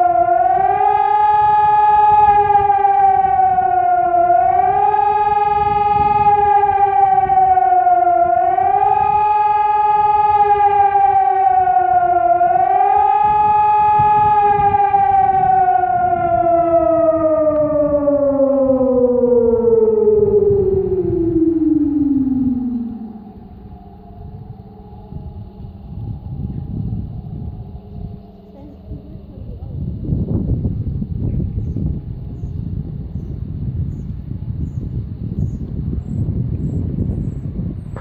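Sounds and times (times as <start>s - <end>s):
civil defence siren rising and falling: 0.0s - 38.0s.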